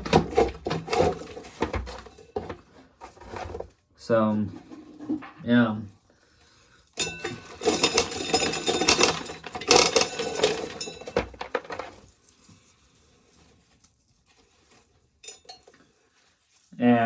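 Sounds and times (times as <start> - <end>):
corn kernels rattling: 6.9 - 13.6.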